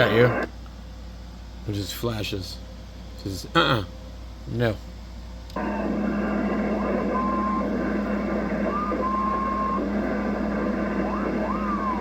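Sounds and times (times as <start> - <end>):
radio static with low hum: 0.0 - 0.5, 5.5 - 12.0
radio whistling tones: 5.6 - 12.0.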